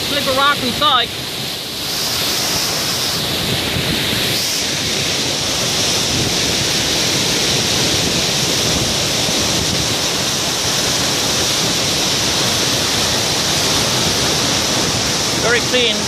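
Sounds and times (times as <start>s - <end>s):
waterfall rushing: 0.0s - 16.0s.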